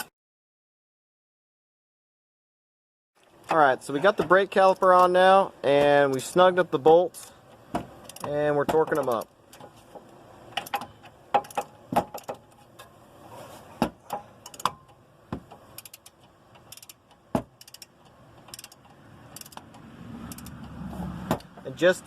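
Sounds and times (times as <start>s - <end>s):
torque wrench ratchet clicks: 8.0s - 9.3s, 14.4s - 14.8s, 15.5s - 20.8s.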